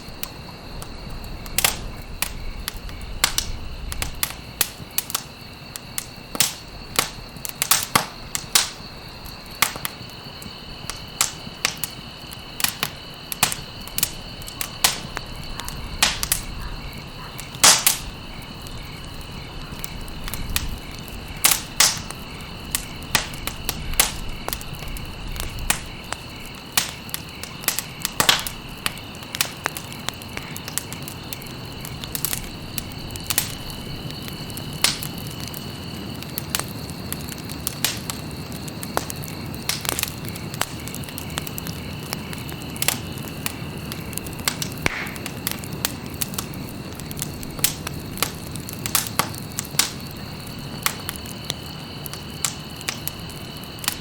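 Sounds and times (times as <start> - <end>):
campfire crackling and popping: 0.0 - 54.0
high insect trill: 0.0 - 54.0.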